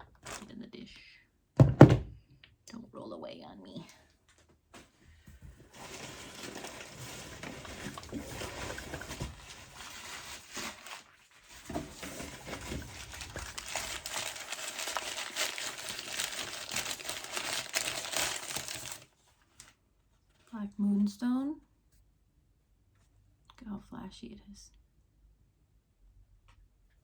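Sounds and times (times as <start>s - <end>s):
packing paper crinkling: 5.6s - 19.8s.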